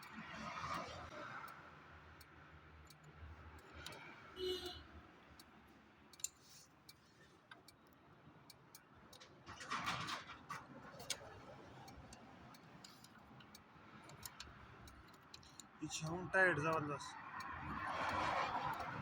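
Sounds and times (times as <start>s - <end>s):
hand tools clicking and clinking: 11.0s - 16.9s.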